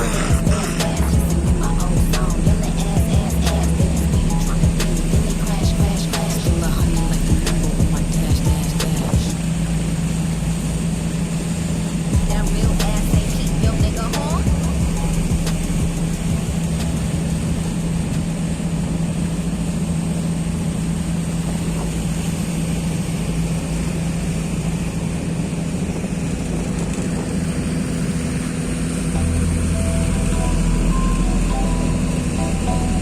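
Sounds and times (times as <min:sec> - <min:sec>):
engine running steadily: 0:00.0 - 0:33.0.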